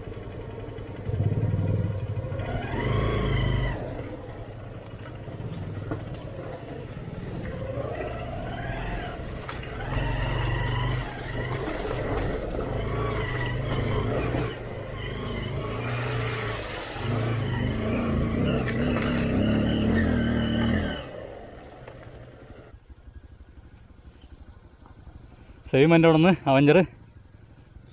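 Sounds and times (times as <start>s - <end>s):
motorcycle engine revving: 0.0s - 27.9s.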